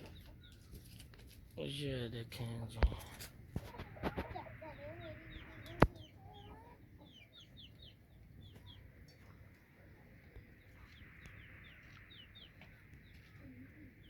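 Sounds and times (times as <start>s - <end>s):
chicks peeping: 0.0s - 1.0s, 2.8s - 14.0s.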